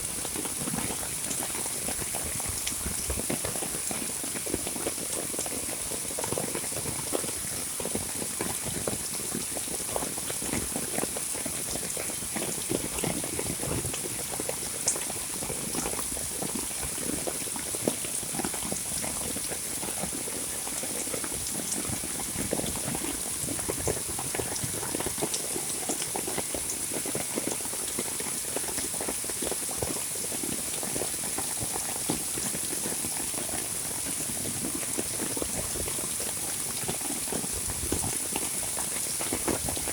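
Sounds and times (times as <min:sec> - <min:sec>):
heavy rain falling: 0:00.0 - 0:03.8, 0:34.8 - 0:39.9.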